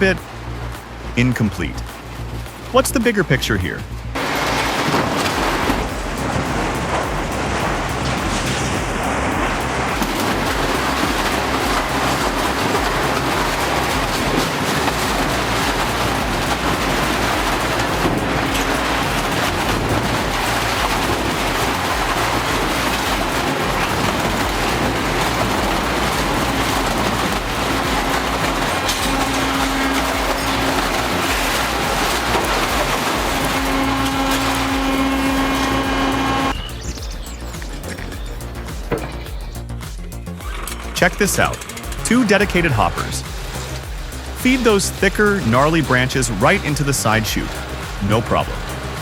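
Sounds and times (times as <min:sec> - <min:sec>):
steady hum: 0:00.0 - 0:49.0
shredding machine grinding: 0:04.2 - 0:36.6.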